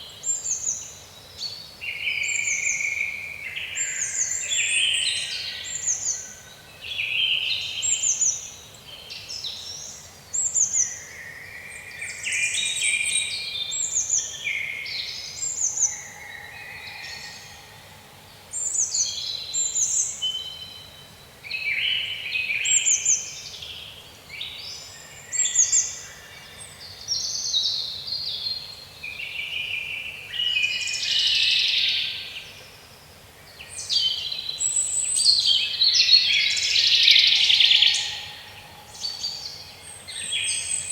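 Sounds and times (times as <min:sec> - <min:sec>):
birds chirping and singing: 0:33.8 - 0:40.9.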